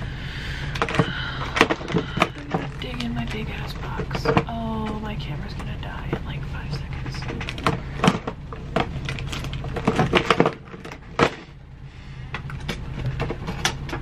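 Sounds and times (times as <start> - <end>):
steady low hum: 0.0 - 14.0
makeup items clicking and clattering: 0.7 - 5.0.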